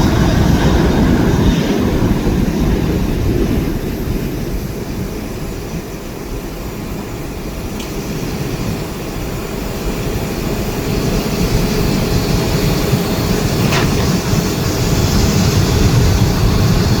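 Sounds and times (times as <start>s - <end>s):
jet engine rumble: 0.0s - 17.0s
short sharp click: 13.6s - 14.3s.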